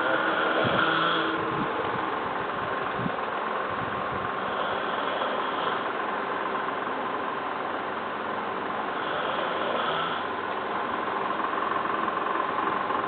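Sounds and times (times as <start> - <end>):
person snoring: 0.0 - 1.5, 4.4 - 5.9, 8.9 - 10.3.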